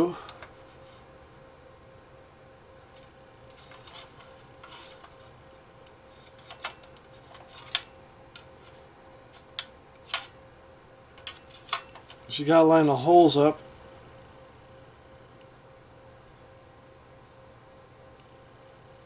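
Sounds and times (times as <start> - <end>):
hard drive scraping on metal: 3.4 - 7.9.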